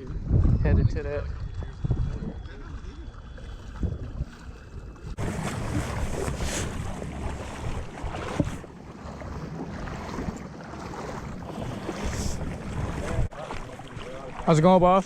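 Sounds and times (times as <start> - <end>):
wind buffeting microphone: 0.0 - 14.5
water sloshing: 0.0 - 15.0.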